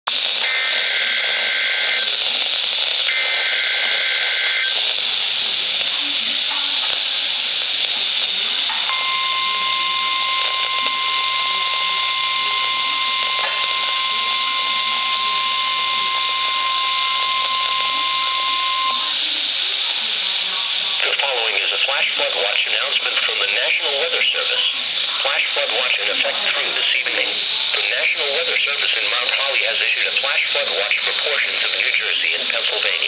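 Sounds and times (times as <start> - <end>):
static hiss: 0.1 - 33.0
steady warning tone: 0.4 - 19.8
shrill digital data tones: 8.7 - 19.2.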